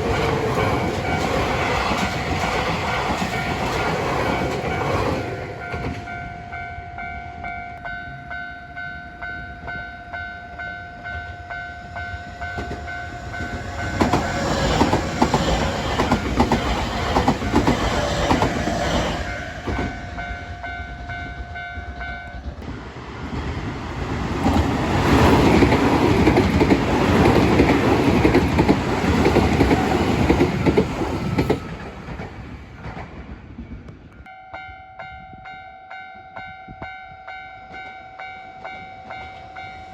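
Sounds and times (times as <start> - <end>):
train wheels clacking over rail joints: 0.0 - 6.1, 12.3 - 20.3, 21.2 - 33.8.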